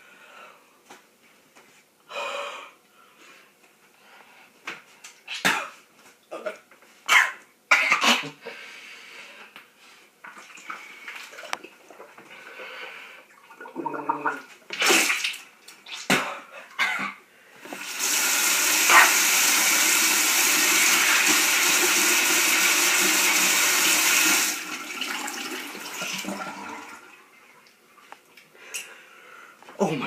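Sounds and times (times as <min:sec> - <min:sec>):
person coughing: 0:05.4 - 0:08.5, 0:16.2 - 0:17.2
water running: 0:13.3 - 0:15.9, 0:17.7 - 0:28.4.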